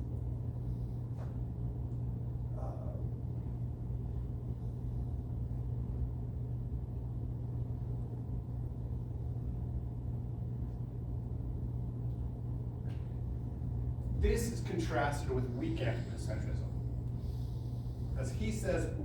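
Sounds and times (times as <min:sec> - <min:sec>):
low hum: 0:00.0 - 0:19.0
rumbling background noise: 0:00.0 - 0:19.0.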